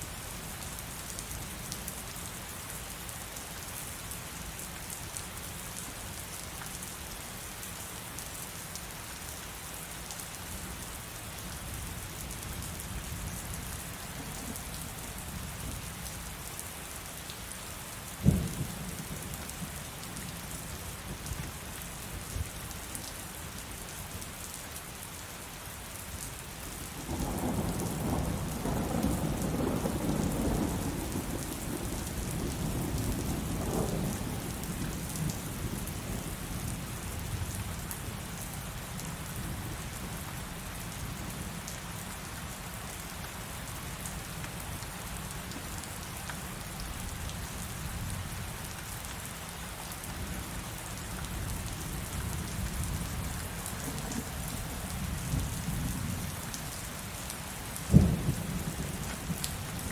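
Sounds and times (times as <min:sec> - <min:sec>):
steady rain hissing: 0:00.0 - 0:59.9.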